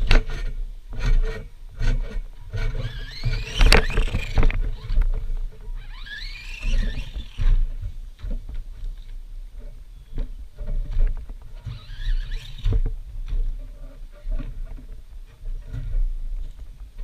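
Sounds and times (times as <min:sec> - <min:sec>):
electric motor whining: 0:02.5 - 0:05.1, 0:05.7 - 0:07.7, 0:11.6 - 0:12.8.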